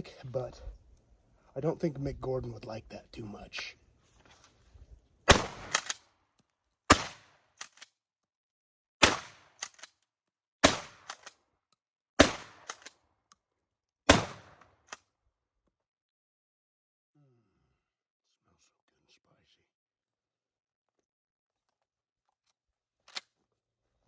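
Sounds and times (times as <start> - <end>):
shotgun shots: 5.3 - 6.0, 6.9 - 7.4, 9.0 - 9.7, 10.6 - 11.3, 12.2 - 12.9, 14.1 - 14.6
shotgun pump racking clack: 5.7 - 6.0, 12.6 - 12.9.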